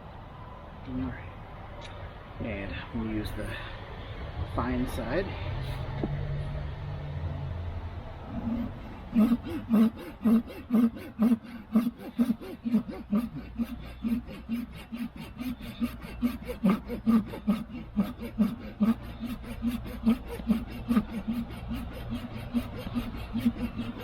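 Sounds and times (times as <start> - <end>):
pull saw cutting branch: 8.4 - 24.0.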